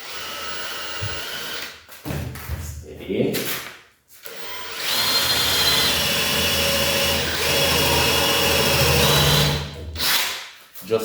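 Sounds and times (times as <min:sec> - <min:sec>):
drill boring into wood: 0:00.0 - 0:01.7, 0:04.3 - 0:10.3.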